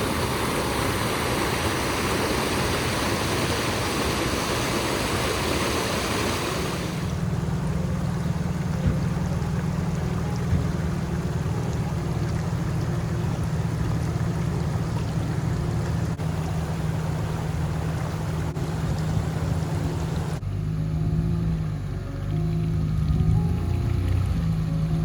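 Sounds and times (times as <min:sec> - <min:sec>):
rushing noise: 0:00.0 - 0:20.9
vehicle engine drone: 0:00.0 - 0:25.0
background music with held notes: 0:07.0 - 0:25.0.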